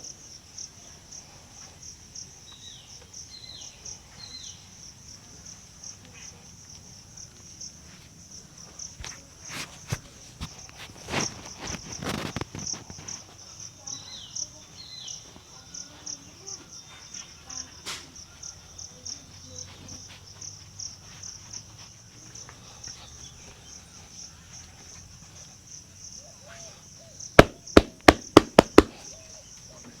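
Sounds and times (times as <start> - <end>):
crickets chirping: 0.0 - 30.0
hands slapping during massage: 27.4 - 29.0.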